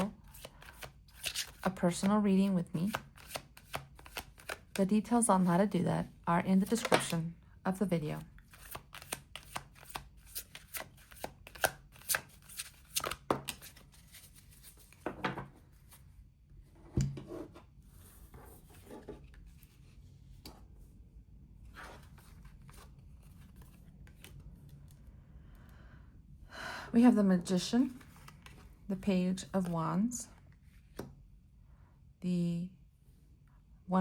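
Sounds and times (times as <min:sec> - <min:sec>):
cards being shuffled: 0:00.0 - 0:04.8, 0:08.5 - 0:15.1.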